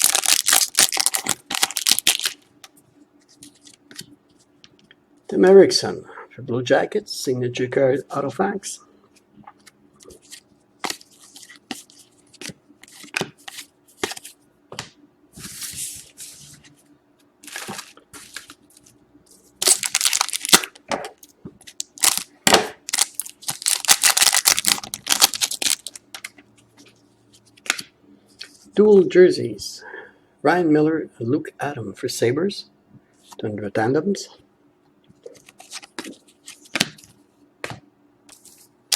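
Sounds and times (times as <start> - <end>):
plastic wrappers crinkling and tearing: 0.0 - 2.4, 19.6 - 20.8, 21.7 - 26.3.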